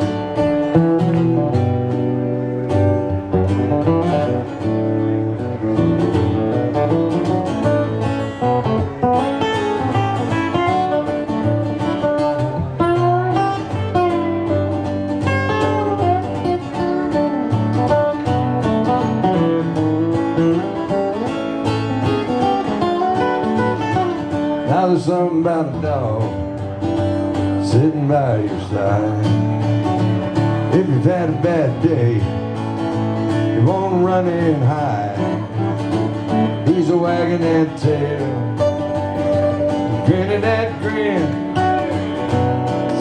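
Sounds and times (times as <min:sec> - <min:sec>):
acoustic guitar strumming and picking: 0:00.0 - 0:43.0.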